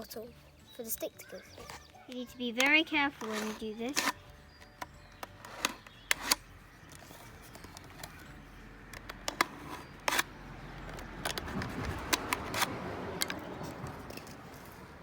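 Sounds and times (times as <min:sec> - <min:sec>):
knife cutting plastic: 0:02.6 - 0:08.2.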